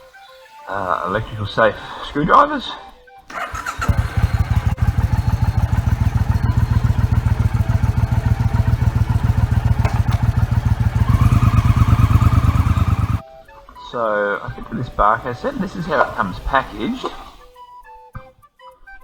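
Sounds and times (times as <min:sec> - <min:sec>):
engine running: 0:03.3 - 0:13.2.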